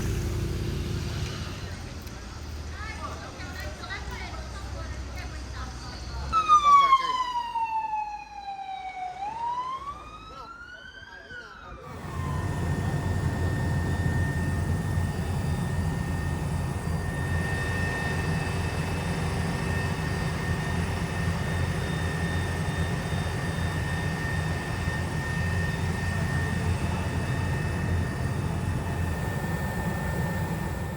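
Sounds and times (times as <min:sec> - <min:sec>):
aircraft engine drone: 0:11.9 - 0:30.9.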